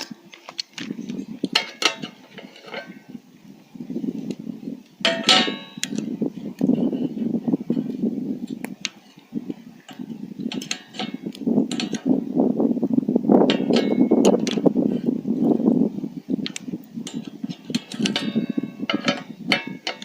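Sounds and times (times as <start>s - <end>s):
low rushing crackling noise: 0.0s - 20.0s
metal cookware clanking: 1.5s - 3.0s, 5.0s - 6.0s, 9.8s - 12.1s, 13.5s - 15.0s, 16.5s - 20.0s.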